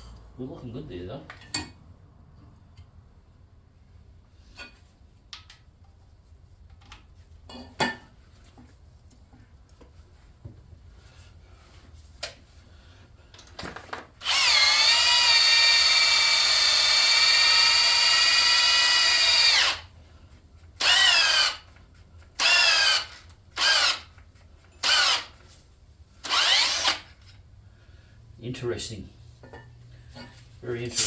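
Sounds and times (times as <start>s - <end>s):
cordless drill boring into metal: 14.2s - 19.8s, 20.8s - 21.6s, 22.4s - 24.1s, 24.8s - 25.3s, 26.2s - 27.1s.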